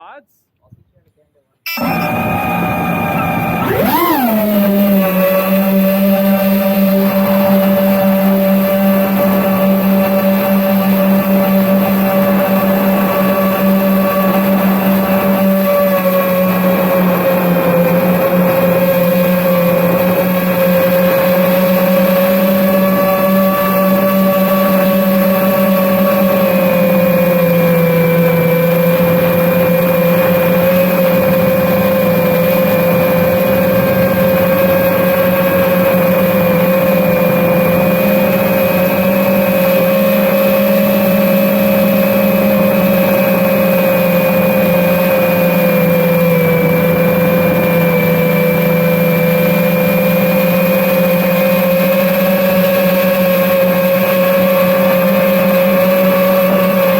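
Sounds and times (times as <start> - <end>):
quadcopter motors whining: 1.7 - 56.9.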